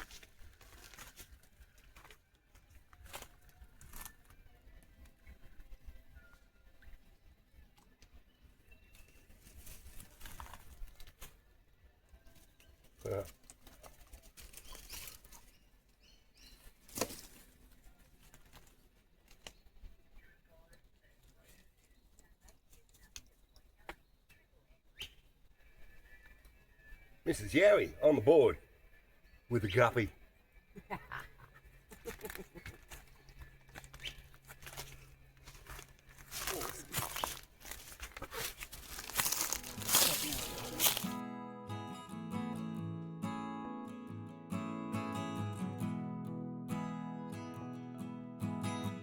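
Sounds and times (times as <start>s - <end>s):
rustling and crinkling handling: 0.0s - 5.1s, 9.0s - 11.5s, 12.2s - 16.0s, 16.6s - 19.7s, 31.9s - 41.2s.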